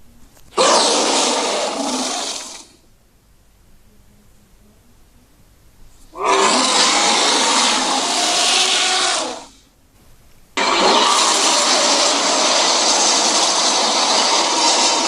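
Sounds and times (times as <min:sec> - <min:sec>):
harsh dinosaur roars: 0:00.6 - 0:02.8, 0:06.2 - 0:09.6, 0:10.6 - 0:15.0.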